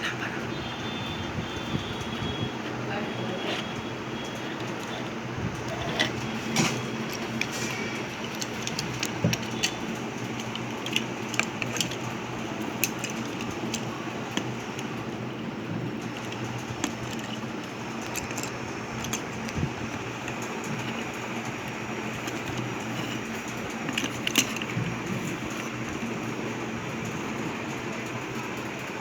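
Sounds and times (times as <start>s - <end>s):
steady background hum: 0.0s - 29.0s
plastic toy clicks and taps: 4.5s - 12.1s.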